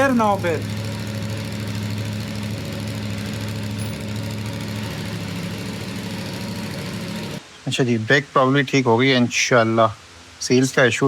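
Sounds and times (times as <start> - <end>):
motorcycle engine idling: 0.0 - 7.4.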